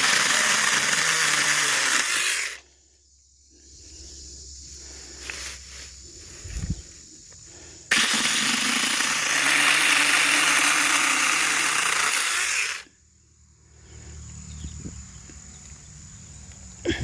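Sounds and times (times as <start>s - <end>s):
electric chainsaw cutting wood: 0.0s - 2.6s, 7.9s - 12.9s.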